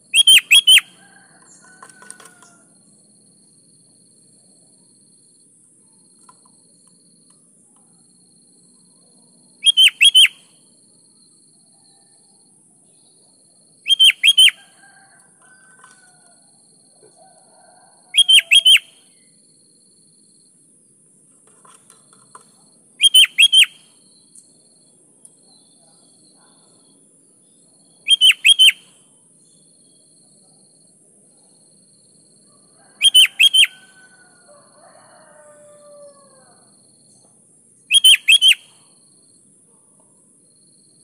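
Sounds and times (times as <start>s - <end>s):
bulbul singing: 0.0s - 1.6s, 9.6s - 10.4s, 13.8s - 14.6s, 18.2s - 19.0s, 23.0s - 23.9s, 28.0s - 28.9s, 33.0s - 34.0s, 37.9s - 38.8s.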